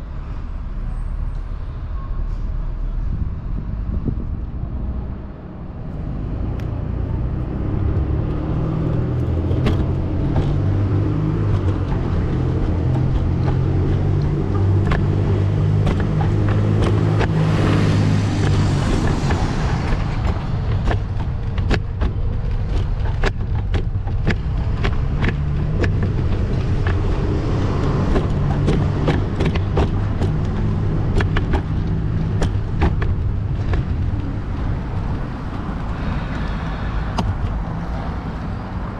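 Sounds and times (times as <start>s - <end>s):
low traffic engine hum: 0.0s - 38.9s
vehicle passing: 3.0s - 38.9s
sharp clicks and rattles: 6.5s - 36.5s.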